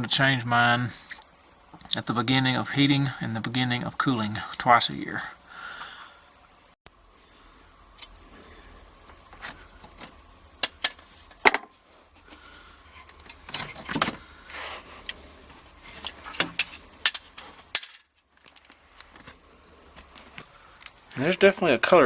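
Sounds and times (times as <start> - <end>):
faint low hum: 0.0 - 22.0
rustling: 11.0 - 21.6.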